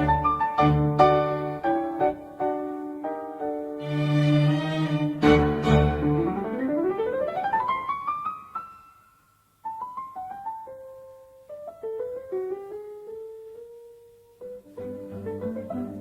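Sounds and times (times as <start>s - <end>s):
piano music: 0.0s - 9.1s, 9.7s - 16.0s.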